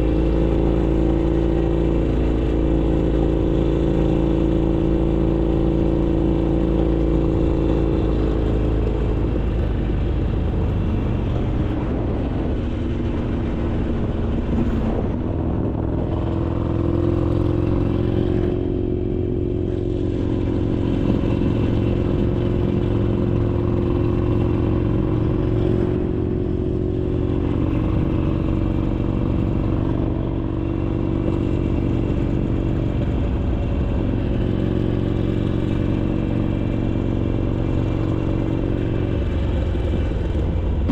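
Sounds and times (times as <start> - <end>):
motorcycle engine running: 0.0 - 40.9.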